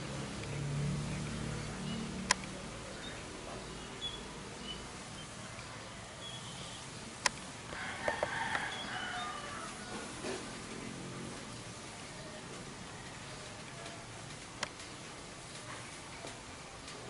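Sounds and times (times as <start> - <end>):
small birds chirping: 1.1 - 7.1.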